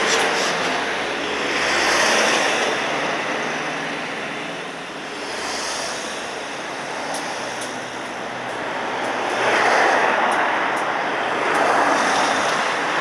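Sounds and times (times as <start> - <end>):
passing vehicles rushing: 0.0 - 13.0.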